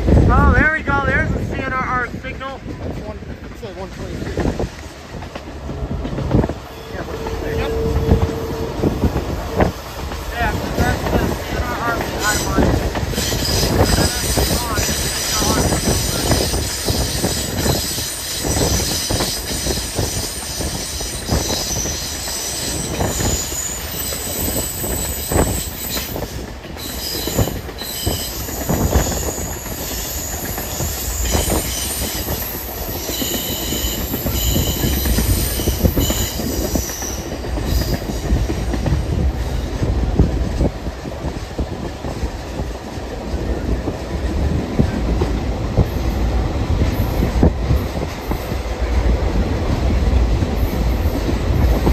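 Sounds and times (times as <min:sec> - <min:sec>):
train wheels clacking over rail joints: 0:02.7 - 0:51.9
high-pitched squeal: 0:06.7 - 0:09.7.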